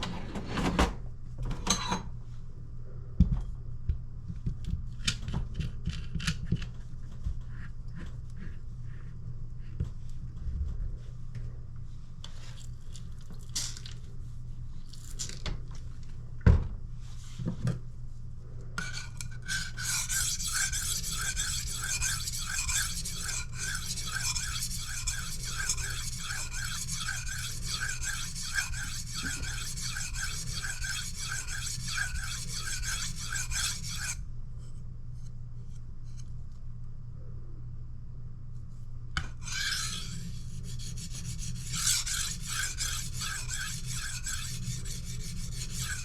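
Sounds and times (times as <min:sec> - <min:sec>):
knife scraping on whetstone: 0:18.8 - 0:34.2, 0:39.4 - 0:46.0.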